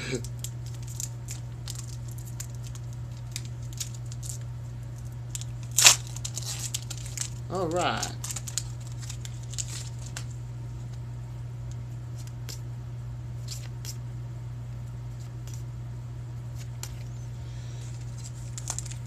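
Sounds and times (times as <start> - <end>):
steady low hum: 0.0 - 19.0
trading cards being handled: 0.2 - 11.0, 16.5 - 19.0.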